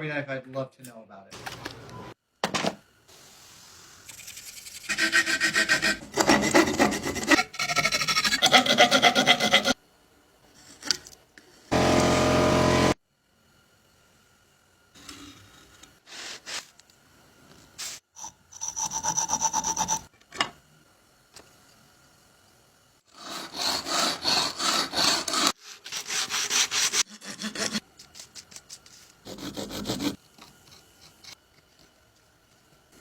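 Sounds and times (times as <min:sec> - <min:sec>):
small saw cutting wood: 0:04.8 - 0:09.8, 0:11.7 - 0:13.0, 0:23.1 - 0:27.8, 0:29.2 - 0:32.0.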